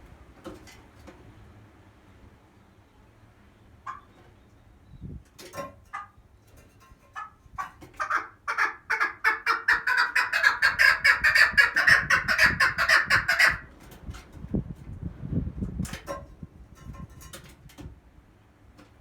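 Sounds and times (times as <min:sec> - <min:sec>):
partridge clucking call: 0:08.0 - 0:13.6.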